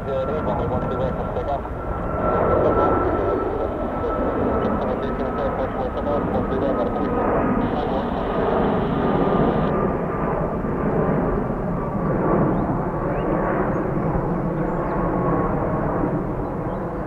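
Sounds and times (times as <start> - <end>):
faint high whine: 0.0 - 9.8
jet engines rumbling: 0.0 - 17.0.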